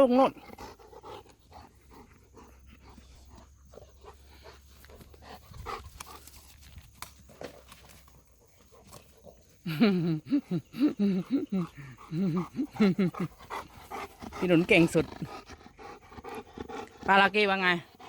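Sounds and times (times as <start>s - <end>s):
dog panting: 0.3s - 6.3s, 11.4s - 18.0s.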